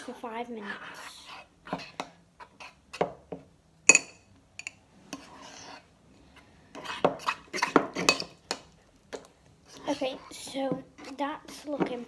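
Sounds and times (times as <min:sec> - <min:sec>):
utensil clinking against a bowl: 0:03.9 - 0:04.8, 0:07.7 - 0:08.7.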